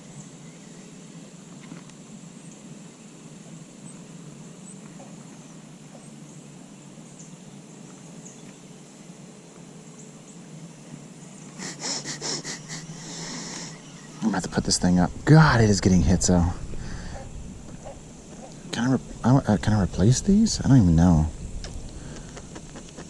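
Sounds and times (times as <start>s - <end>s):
high chirps of insects or birds: 0.0s - 23.0s
low hum: 11.6s - 23.0s.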